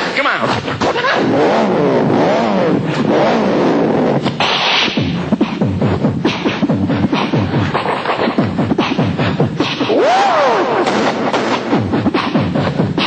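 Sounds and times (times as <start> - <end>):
man imitating car engine: 0.8 - 4.2.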